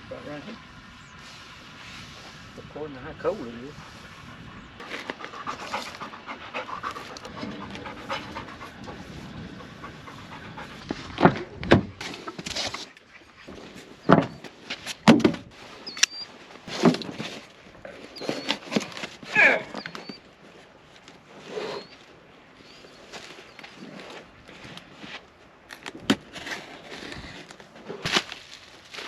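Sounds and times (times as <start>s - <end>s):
person panting: 4.8s - 11.2s.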